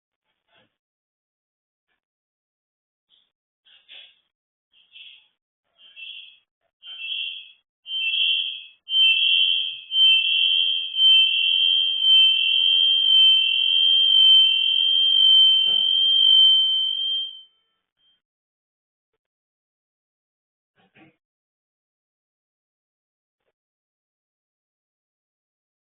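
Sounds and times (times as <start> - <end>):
electronic alarm beeping: 5.8 - 18.2.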